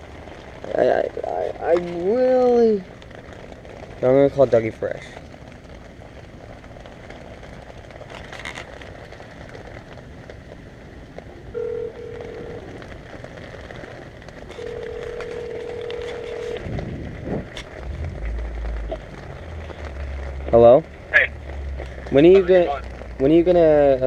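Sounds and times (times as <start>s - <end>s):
steady background hiss: 0.0s - 24.0s
phone ringback tone: 11.6s - 12.7s, 14.5s - 16.6s.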